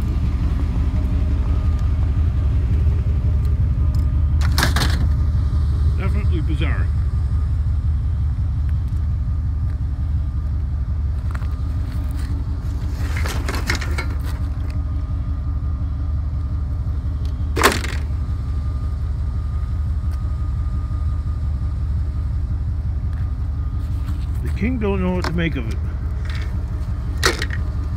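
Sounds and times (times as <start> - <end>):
vehicle engine idling: 0.0 - 27.9
sharp crack: 17.6 - 18.1.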